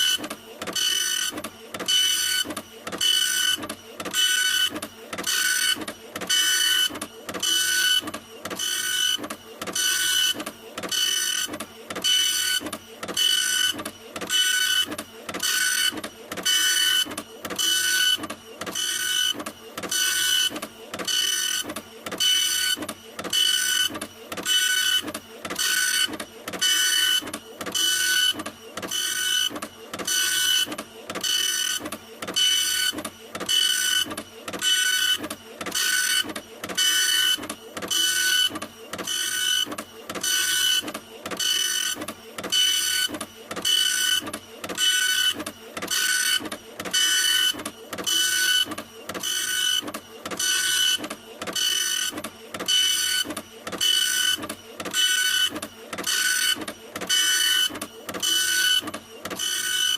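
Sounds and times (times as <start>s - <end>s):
printer mechanism running: 0.0s - 59.9s.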